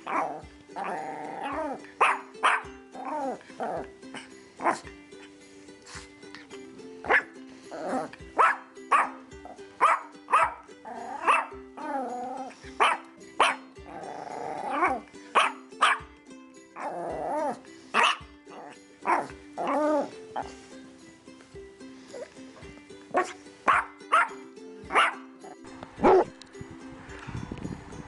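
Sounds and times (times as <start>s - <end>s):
background music with held notes: 0.0s - 28.0s
dog barking: 2.0s - 2.7s, 4.6s - 4.8s, 7.1s - 7.3s, 8.4s - 9.2s, 9.8s - 11.6s, 12.8s - 13.6s, 14.7s - 16.1s, 17.9s - 18.3s, 19.0s - 19.8s, 23.2s - 25.2s, 26.0s - 26.3s.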